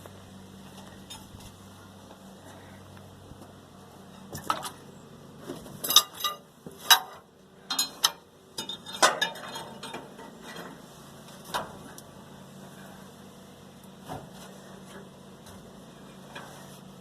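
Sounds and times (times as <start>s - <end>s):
metal parts clanking: 5.8s - 10.8s.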